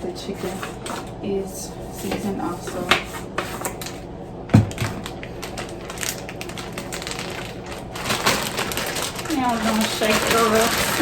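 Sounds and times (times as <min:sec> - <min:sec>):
dull knock: 0:04.6 - 0:05.0.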